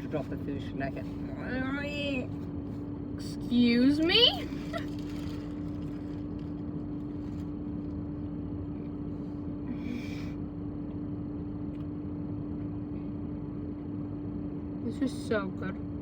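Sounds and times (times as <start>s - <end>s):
car engine idling: 0.0s - 11.8s.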